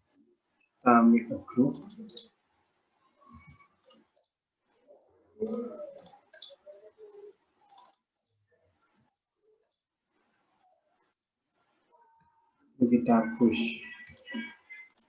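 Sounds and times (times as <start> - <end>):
computer mouse clicking: 1.7 - 2.3, 3.8 - 4.3, 5.4 - 6.6, 7.7 - 8.3, 13.3 - 15.0.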